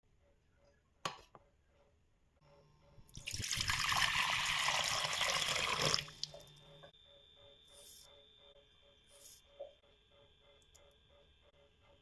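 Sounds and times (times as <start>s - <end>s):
water pouring into a cup: 3.2s - 6.5s.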